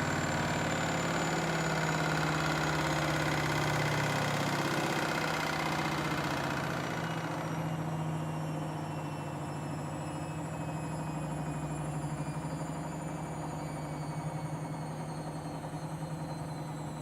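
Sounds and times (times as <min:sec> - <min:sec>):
washing machine spinning: 0:00.0 - 0:17.0.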